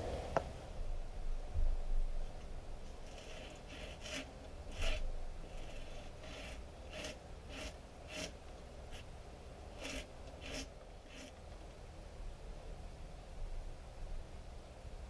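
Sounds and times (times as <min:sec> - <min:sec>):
rasping sanding strokes on filler: 0:03.0 - 0:09.1, 0:09.8 - 0:11.4.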